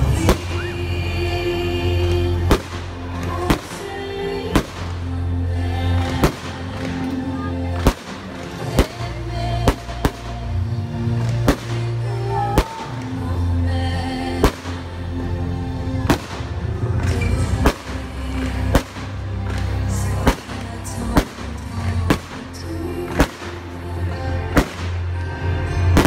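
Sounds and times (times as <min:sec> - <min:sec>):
fireworks bursting in bangs: 0:00.0 - 0:00.8, 0:02.4 - 0:05.1, 0:06.0 - 0:10.6, 0:11.2 - 0:13.2, 0:14.4 - 0:14.8, 0:16.1 - 0:23.8, 0:24.5 - 0:25.2, 0:25.8 - 0:26.0
loud show music with heavy bass: 0:00.0 - 0:26.0.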